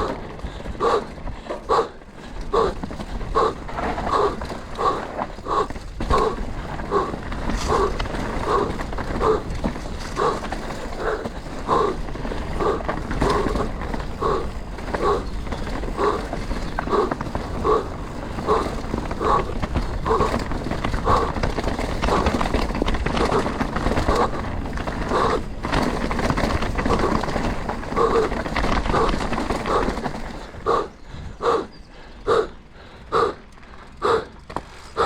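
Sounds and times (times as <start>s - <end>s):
mountain bike rattling on trail: 0.0s - 35.0s
rider breathing hard: 0.0s - 35.0s.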